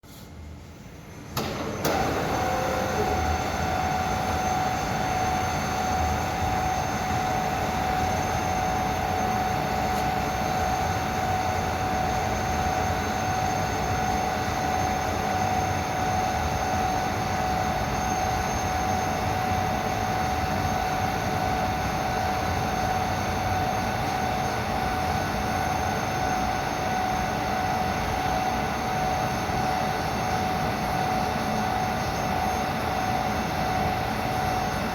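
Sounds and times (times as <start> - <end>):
milling machine whining: 1.3 - 20.8.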